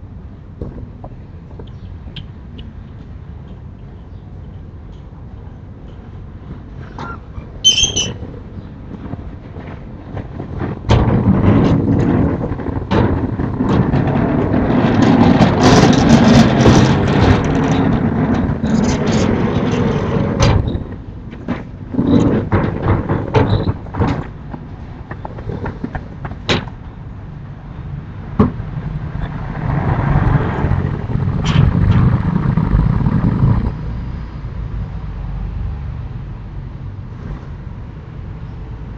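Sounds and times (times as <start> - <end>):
steady low rumble: 8.2 - 38.9.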